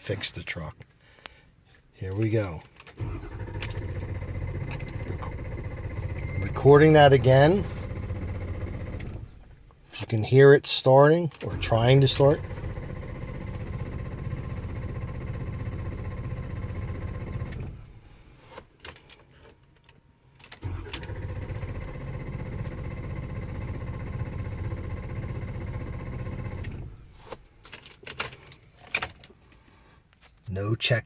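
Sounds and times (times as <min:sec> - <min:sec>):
starter cranking engine: 0:03.0 - 0:09.5, 0:11.5 - 0:17.9, 0:20.6 - 0:27.0.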